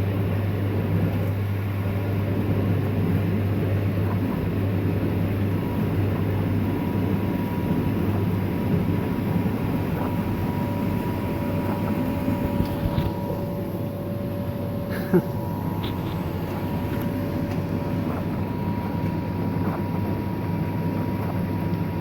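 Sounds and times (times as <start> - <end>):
dishwasher pump humming: 0.0 - 22.0
thin steady whine: 4.0 - 22.0.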